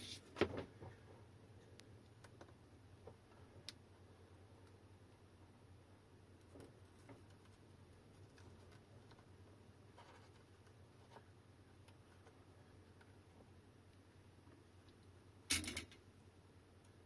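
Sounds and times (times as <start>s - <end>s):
faint clicks and taps: 1.6s - 3.8s.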